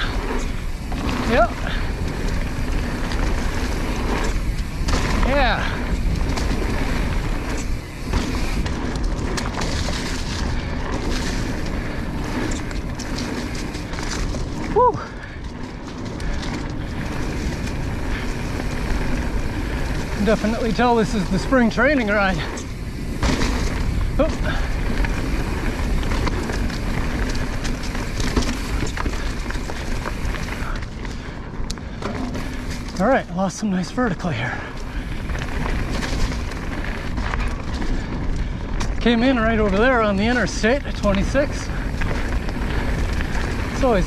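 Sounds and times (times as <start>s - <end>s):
knocks and rattles over bumps: 0.0s - 33.7s
bike tyres rolling on dirt: 0.0s - 44.0s.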